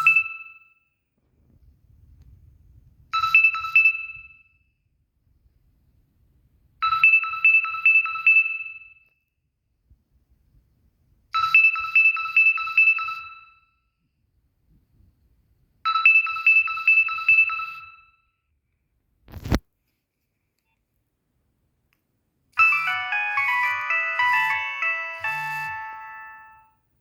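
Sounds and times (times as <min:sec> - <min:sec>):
ringtone melody: 0:00.0 - 0:00.3, 0:22.6 - 0:26.7
phone ringtone beeps: 0:00.0 - 0:00.4, 0:22.6 - 0:26.7.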